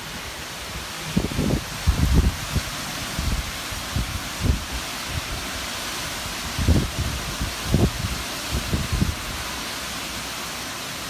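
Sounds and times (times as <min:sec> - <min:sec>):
wind and rain hissing: 0:00.0 - 0:11.0
wind gusts buffeting microphone: 0:00.8 - 0:09.5.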